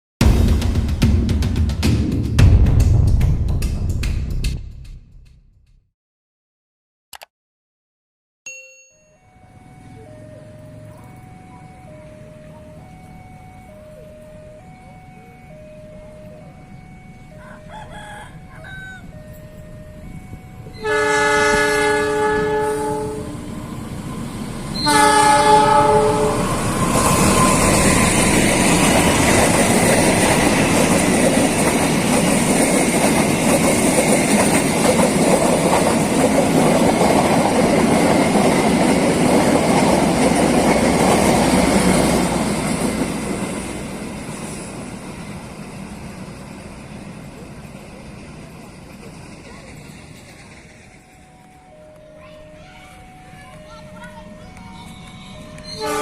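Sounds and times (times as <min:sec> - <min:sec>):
faint two-tone signal: 0:08.5 - 0:17.5
train rumbling and wheel clatter: 0:09.8 - 0:56.0
train horn blasts: 0:20.7 - 0:23.6, 0:24.7 - 0:28.9, 0:54.8 - 0:56.0.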